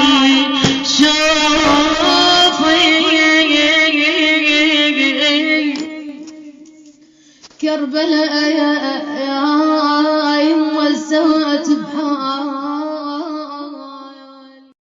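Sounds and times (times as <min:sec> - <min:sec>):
woman singing wordless lament: 0:00.0 - 0:06.6, 0:07.6 - 0:14.7.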